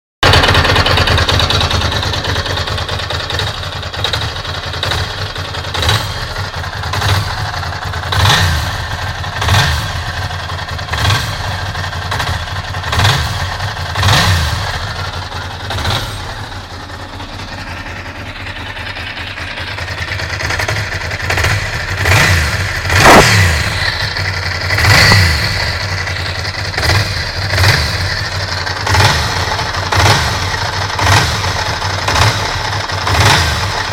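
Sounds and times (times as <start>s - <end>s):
motorcycle engine revving: 0.2s - 33.9s.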